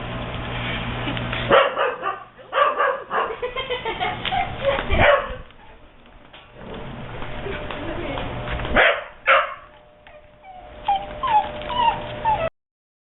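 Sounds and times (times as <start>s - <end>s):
low steady hum: 0.0s - 12.5s
dog barking: 1.5s - 3.4s, 5.0s - 5.4s, 8.8s - 9.7s.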